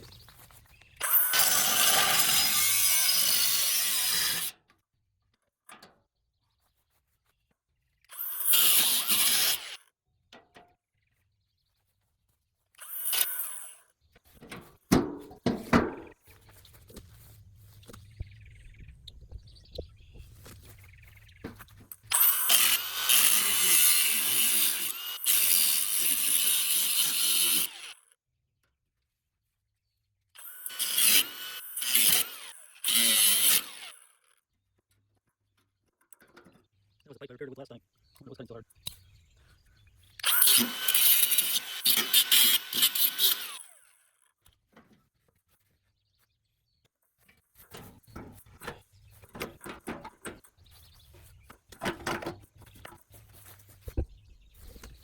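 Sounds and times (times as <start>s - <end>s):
power tool running: 1.0s - 4.5s, 8.1s - 9.8s, 12.8s - 13.8s, 22.1s - 28.0s, 30.4s - 34.1s, 40.2s - 43.9s.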